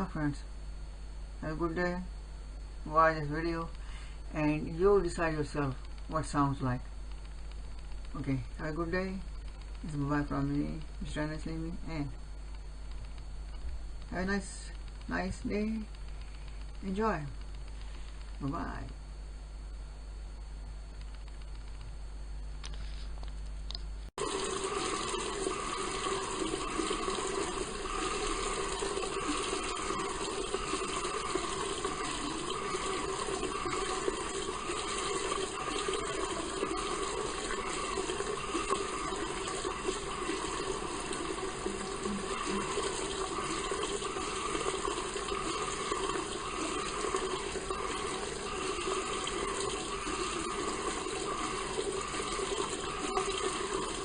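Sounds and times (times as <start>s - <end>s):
water tap running: 24.2s - 54.0s.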